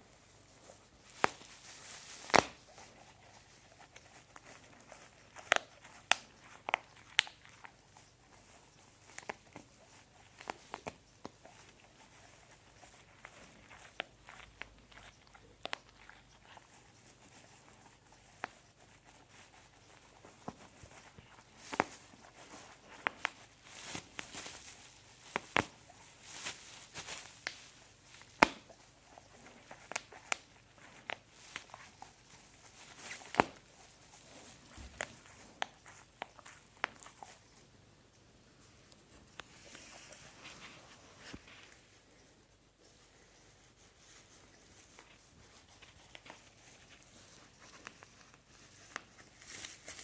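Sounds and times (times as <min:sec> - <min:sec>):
plastic sheet crinkling: 0:00.0 - 0:37.4, 0:43.9 - 0:50.0
bubble wrap popping: 0:01.0 - 0:02.9, 0:04.4 - 0:07.8, 0:18.5 - 0:37.4.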